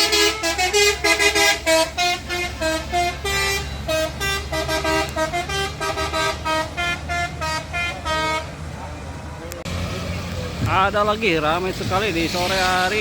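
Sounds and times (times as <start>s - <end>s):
musical bus horn tune: 0.0s - 8.6s
bus engine rumble: 0.0s - 13.0s.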